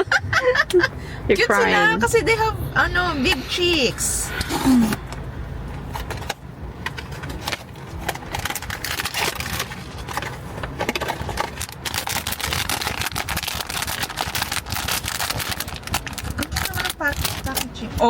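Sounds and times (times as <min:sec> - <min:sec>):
packaging crinkling: 0:05.9 - 0:17.7.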